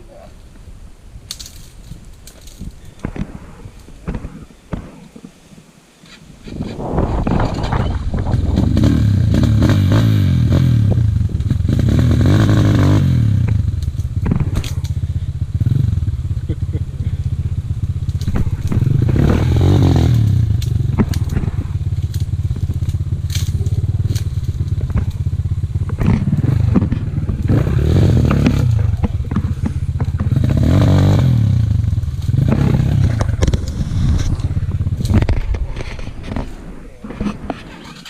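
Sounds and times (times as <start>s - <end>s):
motorcycle engine revving: 6.5s - 38.0s
clicks and clatter: 13.4s - 15.0s, 17.8s - 38.0s.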